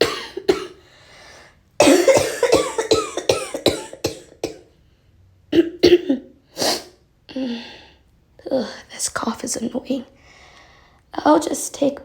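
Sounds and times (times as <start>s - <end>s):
woman coughing: 0.0s - 0.8s, 1.8s - 4.6s, 5.6s - 6.3s.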